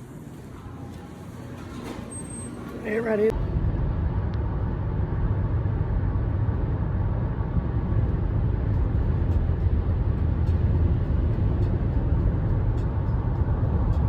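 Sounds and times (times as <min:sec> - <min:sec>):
road rumble inside a car: 0:03.3 - 0:14.0.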